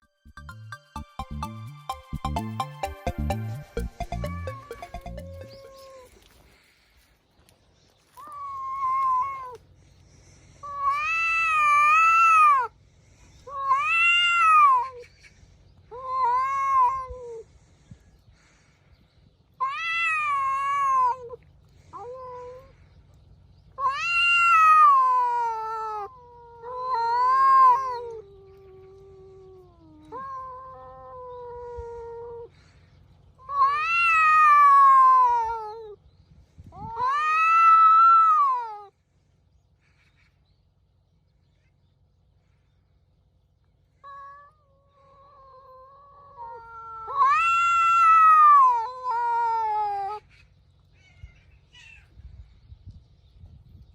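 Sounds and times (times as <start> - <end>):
cats yowling: 3.8 - 6.4, 8.1 - 9.8, 10.6 - 12.8, 13.4 - 15.1, 15.9 - 17.6, 19.5 - 36.0, 36.7 - 39.0, 43.9 - 52.2.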